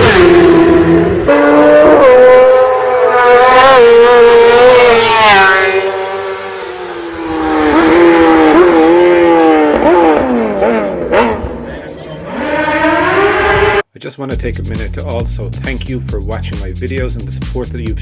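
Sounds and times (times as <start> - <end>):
racing motorcycle engine revving: 0.0 - 13.8.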